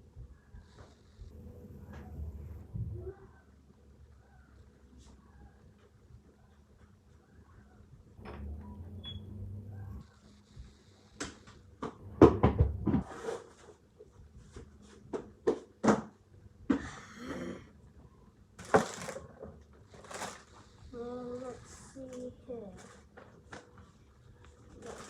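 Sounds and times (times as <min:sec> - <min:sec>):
cupboard doors and drawers knocking: 0:12.2 - 0:13.0.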